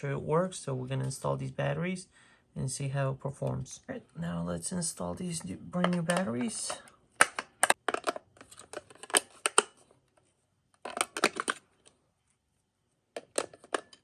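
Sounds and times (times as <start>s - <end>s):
batteries clicking into compartment: 10.8s - 11.6s.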